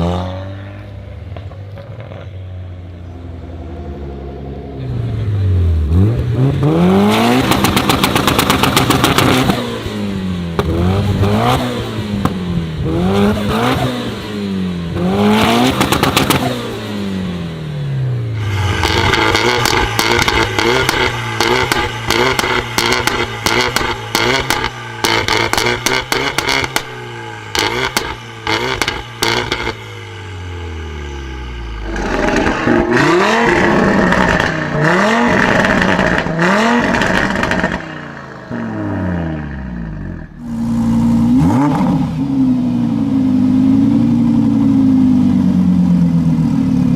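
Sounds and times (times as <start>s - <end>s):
car exhaust revving: 0.0s - 46.9s
exhaust pops and crackles: 7.4s - 9.6s, 15.4s - 16.5s, 18.8s - 26.9s, 35.3s - 37.8s.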